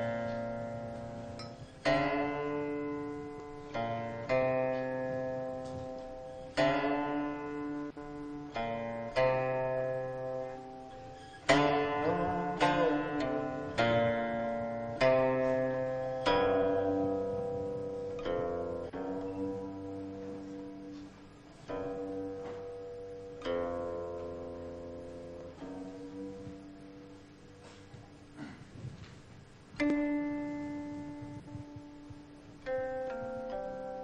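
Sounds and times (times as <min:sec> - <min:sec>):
slow plucked string music: 0:00.0 - 0:34.0.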